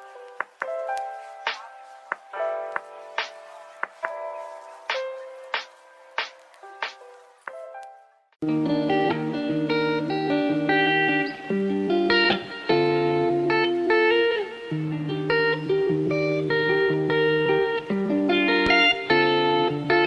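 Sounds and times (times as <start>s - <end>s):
plucked guitar music: 8.4s - 20.0s.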